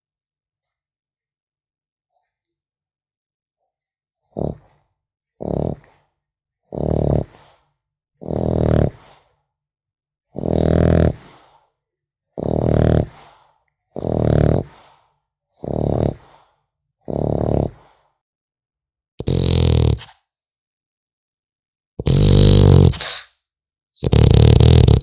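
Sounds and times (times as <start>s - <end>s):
puppy snoring: 4.2s - 9.3s, 10.3s - 11.4s, 12.4s - 13.3s, 13.9s - 14.9s, 15.6s - 16.4s, 17.0s - 18.0s, 19.2s - 20.1s, 22.0s - 23.3s, 24.0s - 25.0s.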